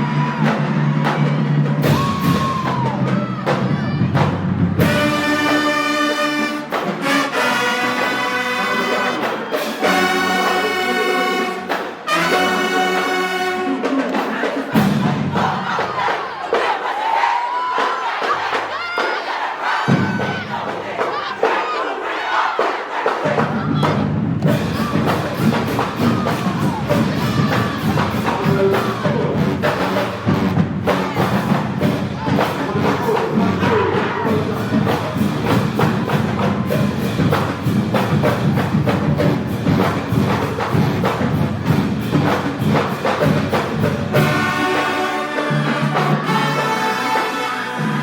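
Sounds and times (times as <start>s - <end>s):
crowd cheering: 0.0s - 36.6s, 44.0s - 48.0s
brass orchestral music: 4.7s - 16.1s, 24.4s - 48.0s
loud dance music: 23.2s - 36.4s.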